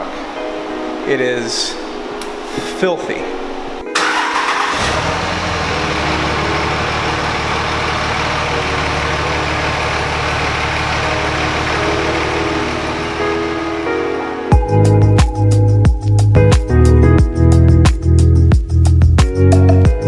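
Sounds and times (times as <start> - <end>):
diesel engine idling: 4.0 - 14.3.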